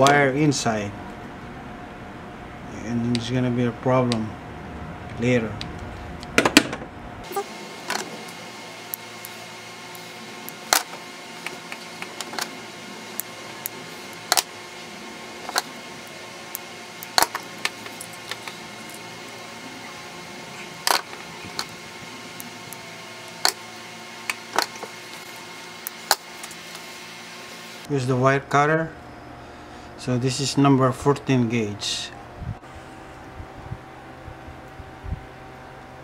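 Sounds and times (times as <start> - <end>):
steady low hum: 0.0 - 36.0
hand tools clicking and snapping: 20.8 - 21.7.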